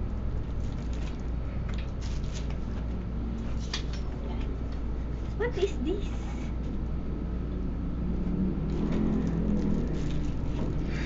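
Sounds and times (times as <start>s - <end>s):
steady low background hum: 0.0s - 11.0s
packaging rustling: 8.7s - 10.9s.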